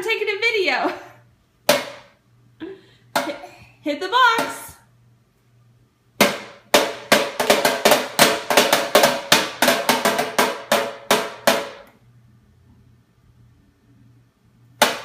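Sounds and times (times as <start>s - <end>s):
box struck like a drum: 1.7s - 2.1s, 6.2s - 11.9s, 14.8s - 15.0s.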